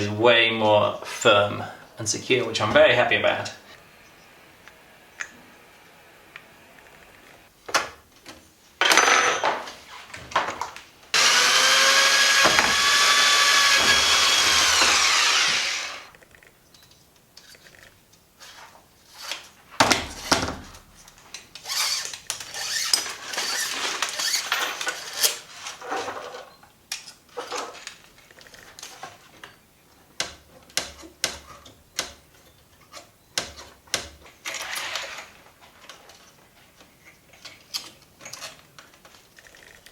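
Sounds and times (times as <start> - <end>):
power drill running: 11.2 - 16.1, 21.6 - 25.4
tools and metal parts clicking: 21.6 - 25.5.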